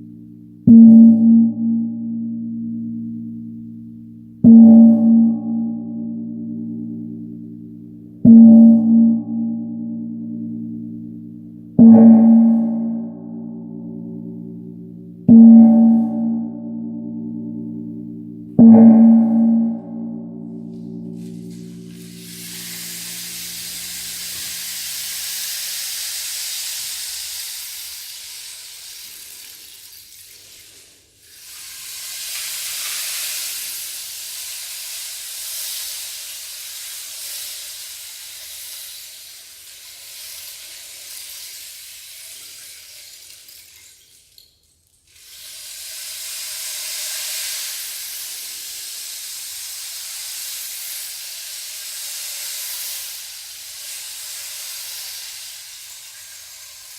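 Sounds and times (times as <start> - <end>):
low gong hum: 0.0 - 23.2
rain stick pellets trickling: 21.2 - 56.9.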